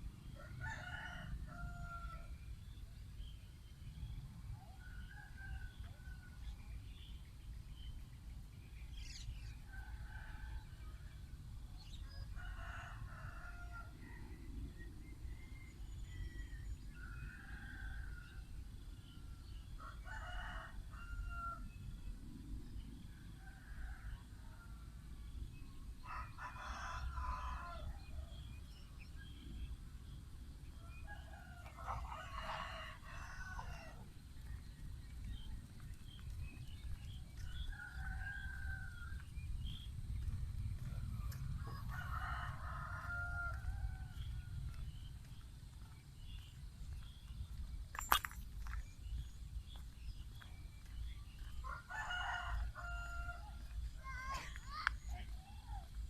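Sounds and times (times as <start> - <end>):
steady low rumble: 38.8 - 51.9.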